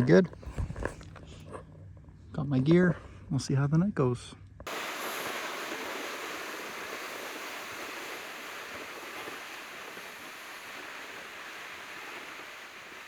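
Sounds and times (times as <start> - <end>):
wind blowing across open ground: 4.7 - 13.0.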